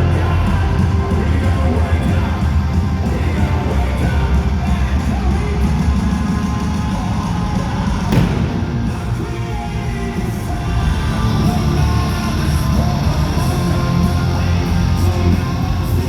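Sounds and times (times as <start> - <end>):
crowd cheering: 0.0 - 16.0
hard rock band playing live: 0.0 - 16.0
sharp hit: 8.1 - 9.5.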